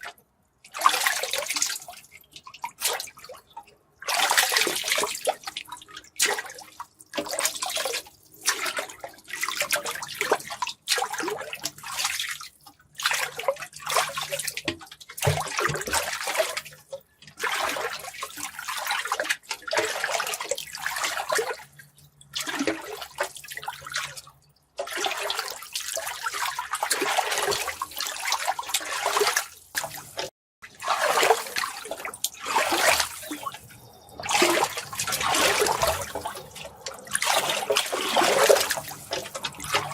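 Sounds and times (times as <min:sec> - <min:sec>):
water rushing and splashing: 0:26.9 - 0:39.9.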